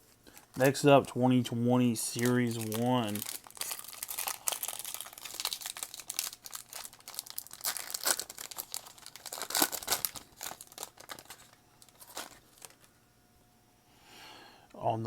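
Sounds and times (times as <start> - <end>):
wrapper tearing and crinkling: 2.2 - 12.9.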